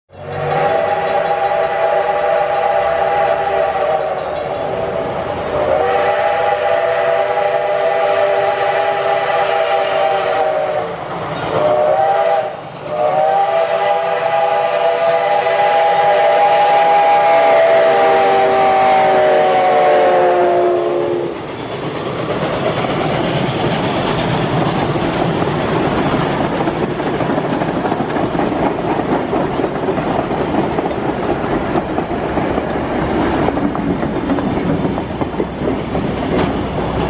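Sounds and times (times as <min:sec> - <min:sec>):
steam whistle blasts: 0:00.2 - 0:21.5.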